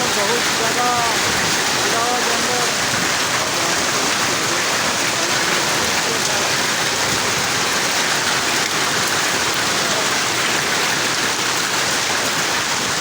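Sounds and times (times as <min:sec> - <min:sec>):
heavy rain with hail: 0:00.0 - 0:13.0.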